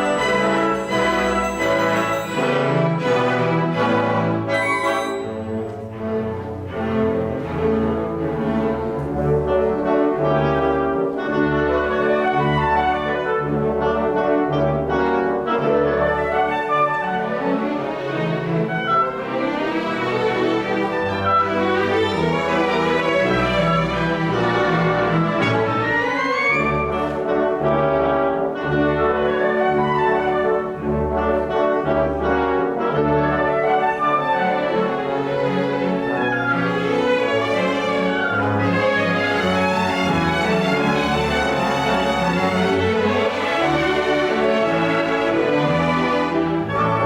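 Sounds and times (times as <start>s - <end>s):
brass section: 0.0s - 6.2s
strings playing: 0.0s - 7.7s
strings: 0.0s - 9.8s, 17.3s - 27.9s, 34.5s - 47.0s
orchestral bass line: 0.0s - 11.5s.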